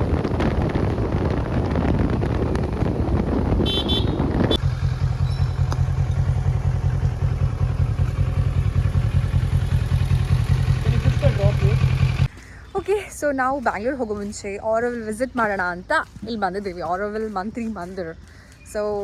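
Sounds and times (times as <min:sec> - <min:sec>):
motorcycle engine: 0:00.0 - 0:12.4
wind and road noise: 0:00.0 - 0:19.0
horn toot: 0:03.6 - 0:04.6.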